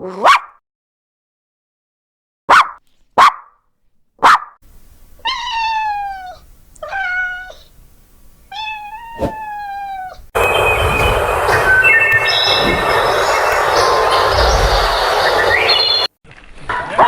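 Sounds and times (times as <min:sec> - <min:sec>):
dog bark: 0:00.0 - 0:00.6, 0:02.5 - 0:03.5, 0:04.2 - 0:04.5
cat meowing: 0:05.2 - 0:07.7, 0:08.5 - 0:10.3
loud steady noise: 0:10.4 - 0:16.1.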